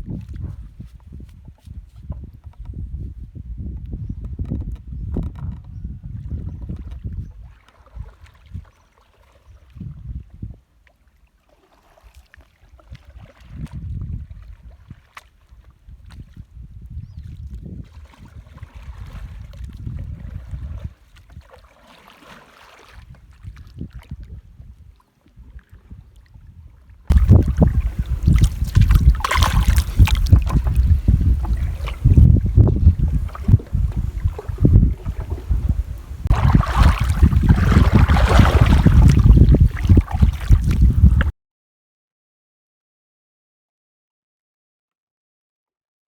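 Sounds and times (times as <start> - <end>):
wind buffeting microphone: 0.0 - 8.7, 9.6 - 10.6, 12.9 - 15.0, 15.8 - 21.4, 23.0 - 41.3
water sloshing around boat: 0.0 - 41.3
rushing water: 21.4 - 23.0, 27.1 - 41.3.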